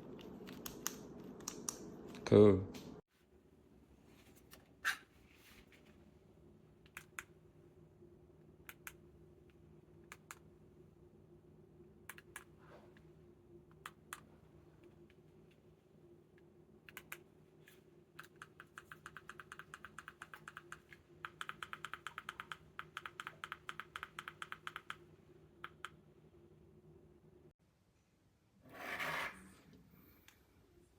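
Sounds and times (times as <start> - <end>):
faint steady hum: 0.0 - 30.9.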